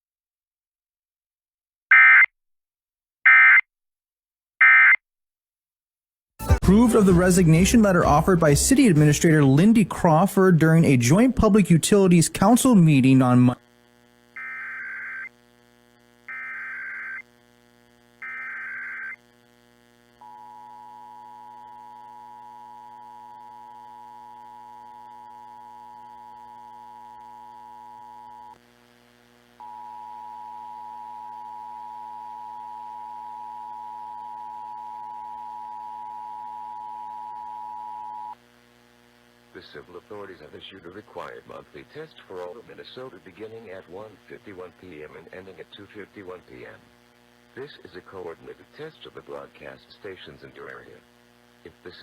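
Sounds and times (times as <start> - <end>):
screechy data tones: 14.4 - 15.3, 16.3 - 17.3, 18.2 - 19.2.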